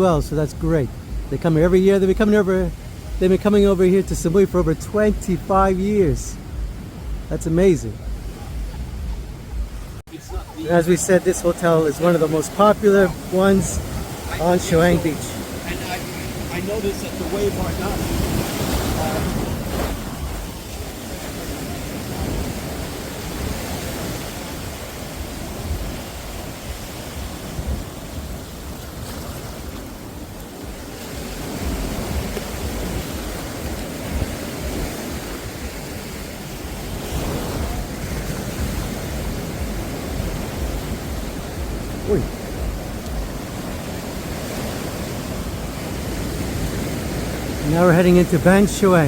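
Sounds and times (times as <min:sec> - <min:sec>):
wind rumbling on microphone: 0:00.0 - 0:10.6, 0:12.4 - 0:47.9
sea waves breaking: 0:00.0 - 0:49.0.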